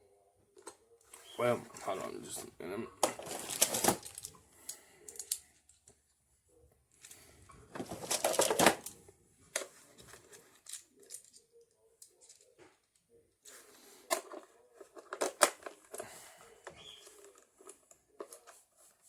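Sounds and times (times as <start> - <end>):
small hard parts rattling: 3.0 - 5.7, 7.8 - 9.0.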